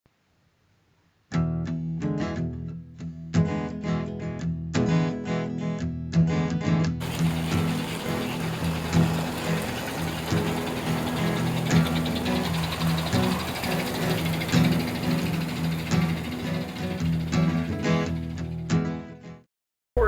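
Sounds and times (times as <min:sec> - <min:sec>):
strummed acoustic guitar: 0:02.0 - 0:19.2.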